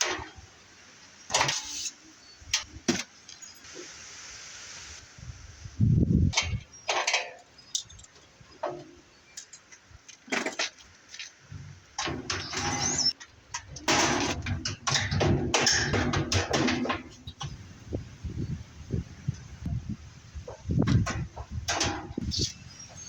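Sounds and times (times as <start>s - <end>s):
metal rattling and scraping: 1.3s - 2.0s, 6.3s - 17.7s, 20.4s - 23.0s
metal knocks and clanks: 11.5s - 17.6s, 20.5s - 22.3s.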